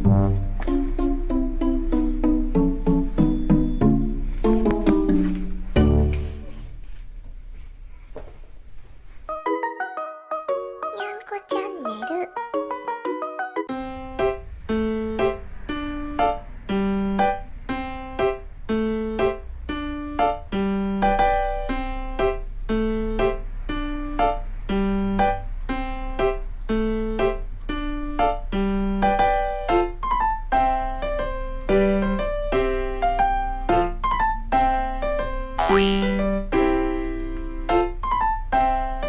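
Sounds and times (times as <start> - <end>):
light piano tune: 0.0 - 6.8.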